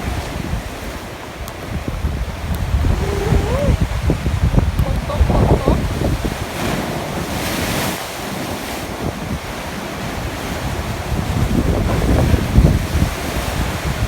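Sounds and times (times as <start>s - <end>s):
wind buffeting microphone: 0.0s - 8.0s, 8.9s - 14.0s
sea waves at shore: 0.0s - 14.0s.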